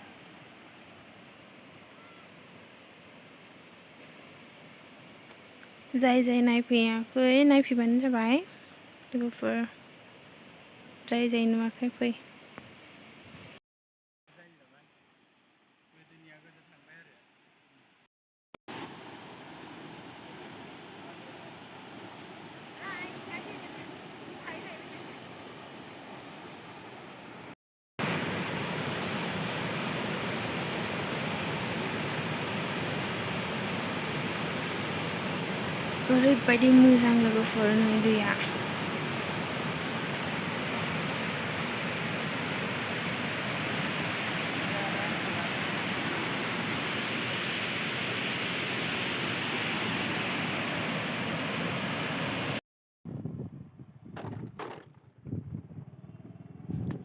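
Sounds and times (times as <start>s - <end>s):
waterfall roaring: 18.7s - 25.2s, 28.0s - 52.6s.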